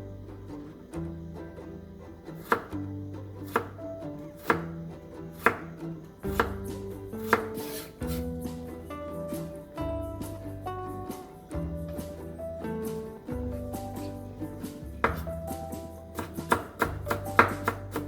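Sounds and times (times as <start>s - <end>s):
background music: 0.0s - 18.0s
knife chopping on cutting board: 2.4s - 2.7s, 3.5s - 3.8s, 4.4s - 4.7s, 5.4s - 5.7s, 6.3s - 8.6s, 13.8s - 18.0s.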